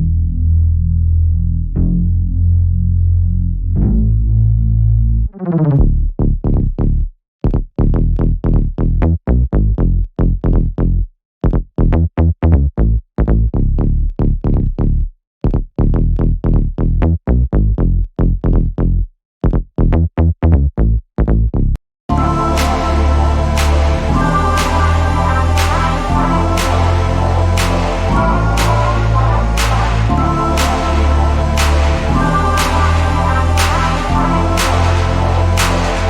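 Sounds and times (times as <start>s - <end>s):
electronic dance music: 22.1s - 36.0s.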